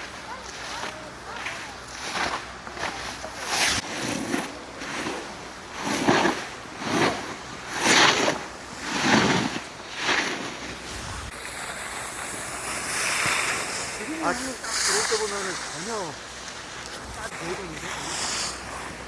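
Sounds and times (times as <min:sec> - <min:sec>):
skis swishing through snow: 0:00.0 - 0:19.0
wind on microphone: 0:03.6 - 0:14.7.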